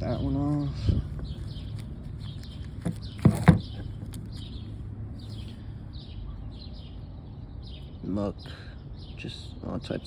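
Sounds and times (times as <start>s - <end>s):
birds chirping: 0.0s - 10.0s.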